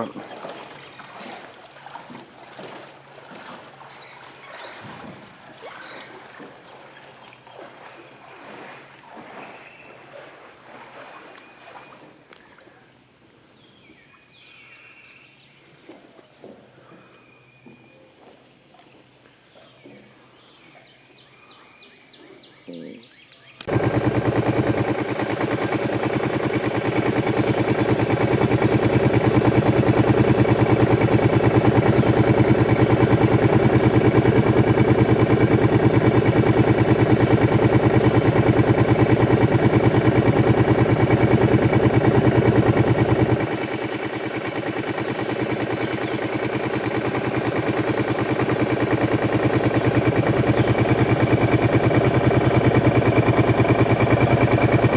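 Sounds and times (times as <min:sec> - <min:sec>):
small boat motor popping: 0:23.6 - 0:54.9.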